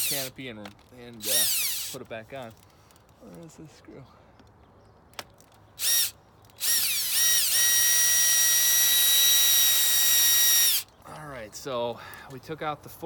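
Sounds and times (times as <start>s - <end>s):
electric drill-driver whining: 0.0s - 0.3s, 1.2s - 2.0s, 5.8s - 10.9s.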